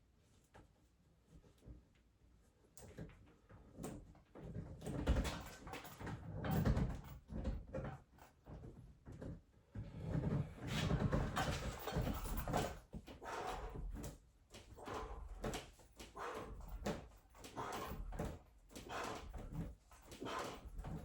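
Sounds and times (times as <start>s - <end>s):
man breathing hard and straining: 13.1s - 14.0s, 14.6s - 21.0s.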